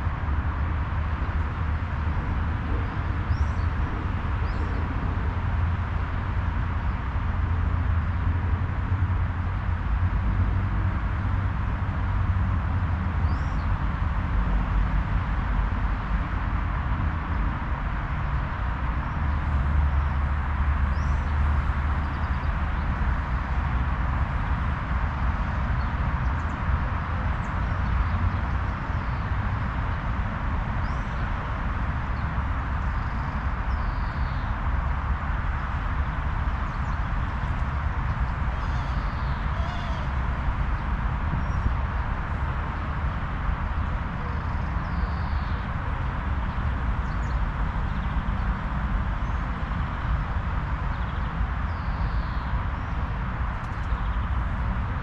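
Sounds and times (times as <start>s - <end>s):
wind rumbling on microphone: 0.0s - 55.0s
bird chirping: 36.7s - 40.2s.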